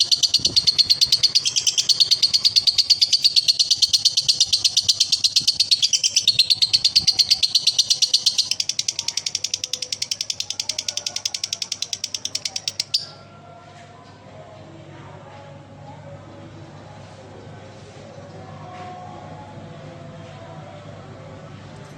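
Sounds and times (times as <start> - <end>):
lovebird rapid high chatter: 0.0 - 13.2.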